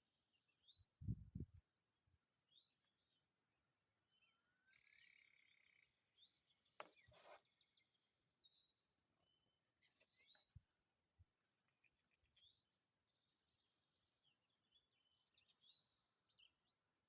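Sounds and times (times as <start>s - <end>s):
small birds chirping: 2.4s - 17.0s.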